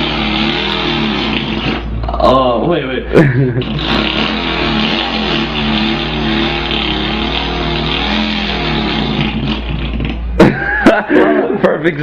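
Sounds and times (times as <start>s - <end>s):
boy imitating engine with voice: 3.6s - 10.3s.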